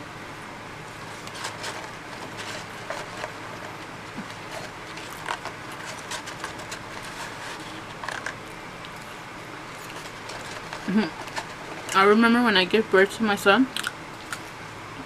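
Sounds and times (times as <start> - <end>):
electric fan hiss: 0.0 - 15.0
person chewing crispy food: 1.1 - 12.0, 13.7 - 14.6.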